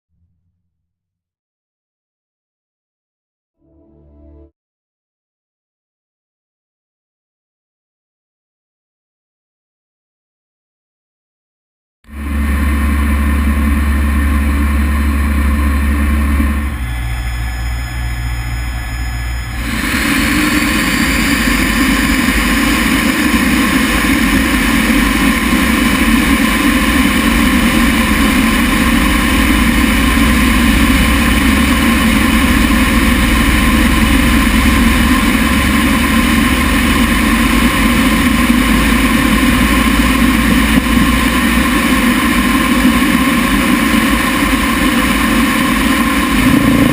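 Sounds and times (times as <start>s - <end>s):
jet engine roar with whine: 12.1s - 46.9s.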